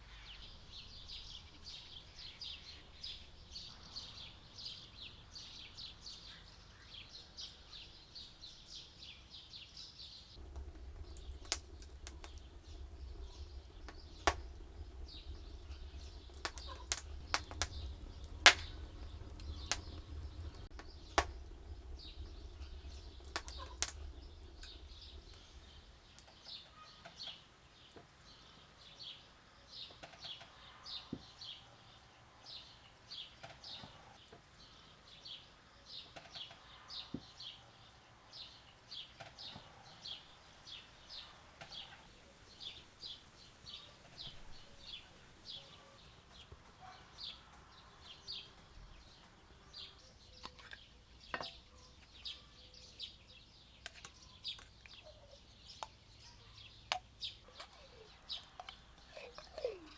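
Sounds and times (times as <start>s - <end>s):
bird chirping: 0.0s - 59.9s
low hum: 10.4s - 26.3s
sharp clicks and knocks: 10.4s - 26.4s.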